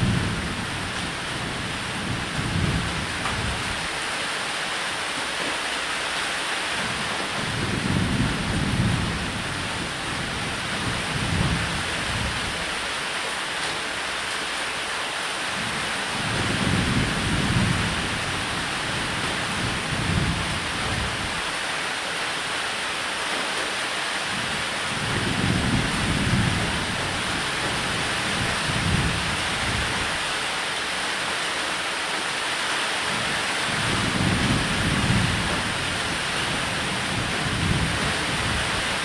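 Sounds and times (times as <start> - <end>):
rain hissing: 0.0 - 39.0
thunder rumbling: 33.7 - 39.0.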